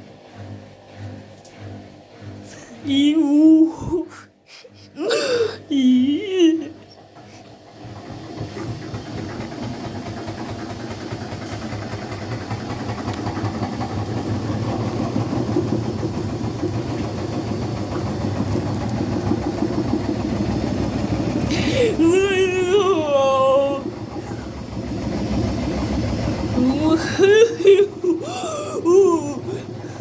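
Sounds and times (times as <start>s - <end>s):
washing machine running: 0.0s - 30.0s
person's wavering voice: 2.6s - 6.8s, 21.5s - 23.9s, 26.6s - 29.8s.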